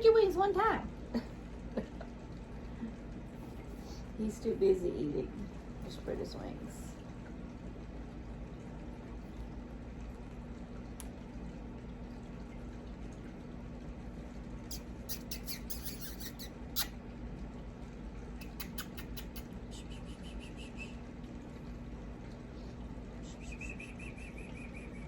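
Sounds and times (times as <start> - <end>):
steady low hum: 0.0 - 25.0
soft bird chirps: 14.7 - 16.9, 23.2 - 25.0.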